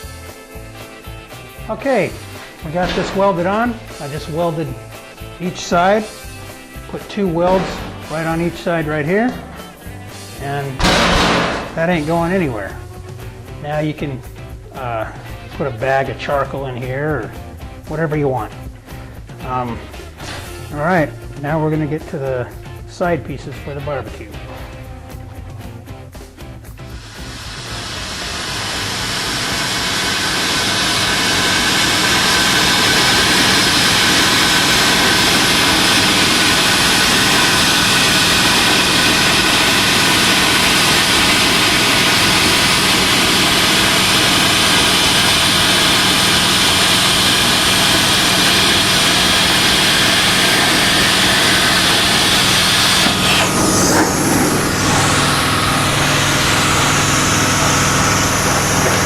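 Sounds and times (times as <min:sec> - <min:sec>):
power tool cutting sheet steel: 0:02.0 - 0:09.8, 0:10.4 - 0:12.6, 0:26.8 - 0:59.0.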